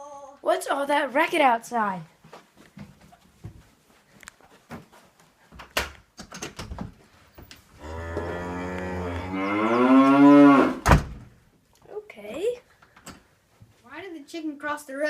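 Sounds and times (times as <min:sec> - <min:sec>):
low moo-like call: 0:07.8 - 0:10.8.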